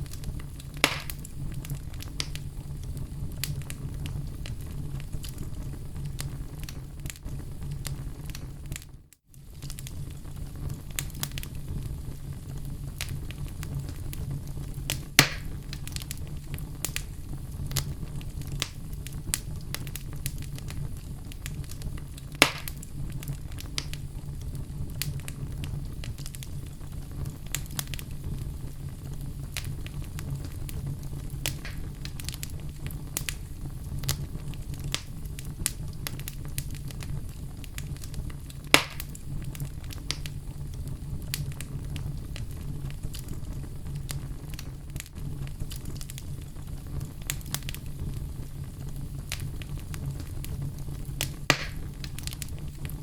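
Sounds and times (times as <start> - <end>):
sharp loud pops of fire: 0.0 - 2.4, 14.9 - 16.2, 21.5 - 24.0, 29.6 - 32.6, 37.8 - 39.2, 51.2 - 53.0
fire crackling: 0.0 - 53.0
low rumble of flames: 0.0 - 53.0.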